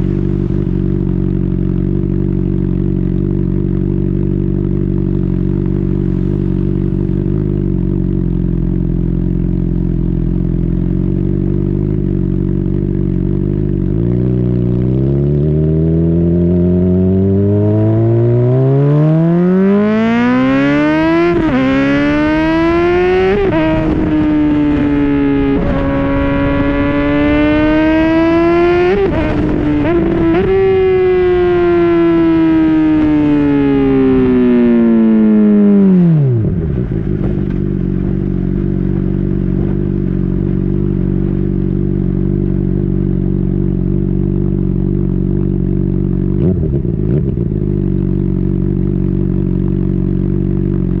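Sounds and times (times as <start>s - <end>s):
motorcycle engine idling: 0.0s - 14.9s, 36.4s - 51.0s
motorcycle engine revving: 0.0s - 51.0s.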